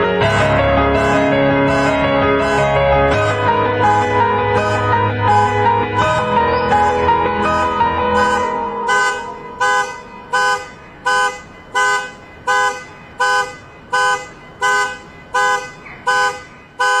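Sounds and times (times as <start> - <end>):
music: 0.0 - 10.4
car alarm honking: 0.2 - 17.0.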